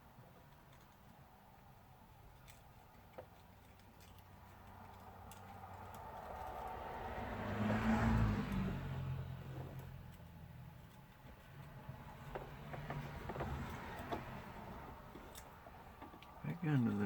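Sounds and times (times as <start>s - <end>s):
vehicle passing by: 4.3s - 17.0s.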